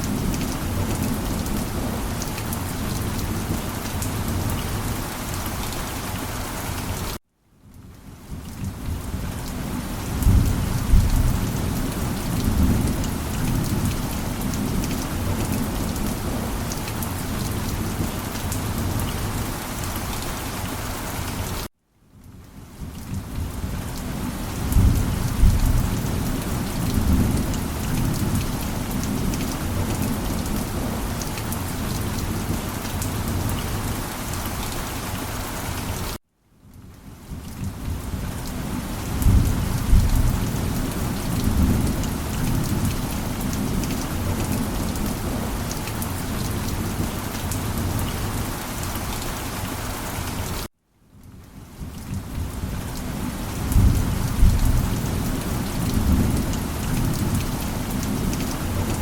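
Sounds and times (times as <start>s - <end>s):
steady rain: 0.0s - 59.0s
rolling thunder: 24.6s - 26.2s, 53.7s - 55.2s.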